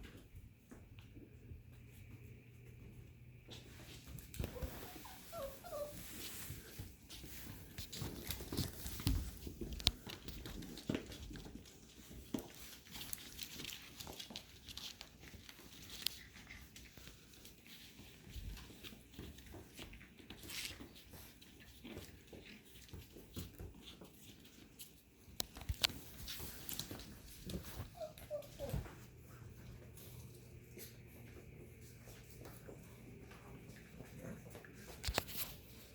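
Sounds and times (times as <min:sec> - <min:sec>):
puppies scuffling and clicking: 0:00.0 - 0:35.9
puppies whimpering: 0:04.4 - 0:06.6, 0:27.4 - 0:29.1.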